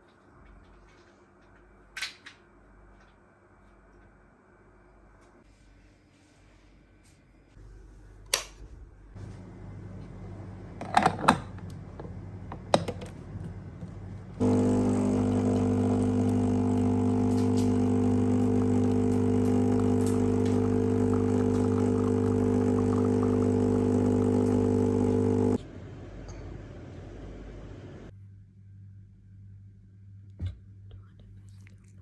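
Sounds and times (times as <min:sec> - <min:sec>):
appliance motor humming: 0:14.4 - 0:25.6.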